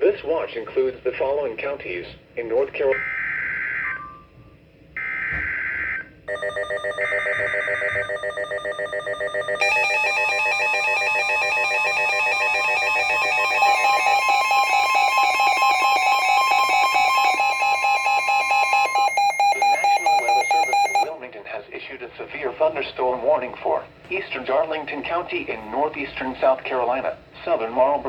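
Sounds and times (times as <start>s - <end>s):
pulsing electronic alarm tone: 5.0s - 21.1s
steady warning tone: 5.0s - 21.2s.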